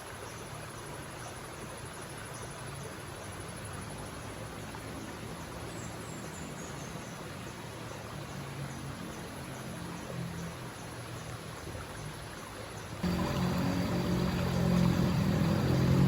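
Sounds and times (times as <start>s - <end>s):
river water flowing: 0.0s - 16.0s
insects trilling: 13.0s - 16.0s.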